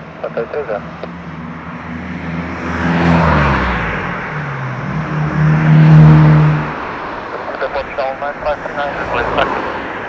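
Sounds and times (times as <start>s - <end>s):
vehicles passing by: 0.0s - 10.0s.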